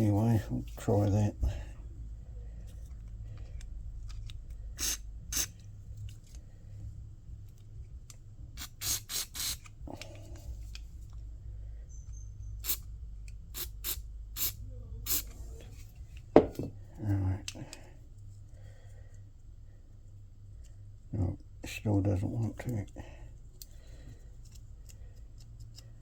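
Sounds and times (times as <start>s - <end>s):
steady low hum: 0.0s - 26.0s
aerosol spray squirts: 4.8s - 5.5s, 12.6s - 12.8s, 13.5s - 15.3s.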